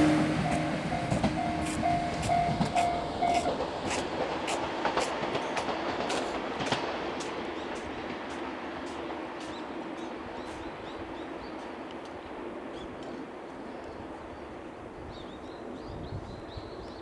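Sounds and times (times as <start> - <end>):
crossing warning bell ringing: 0.0 - 3.6
train wheels clacking on rails: 0.0 - 10.9.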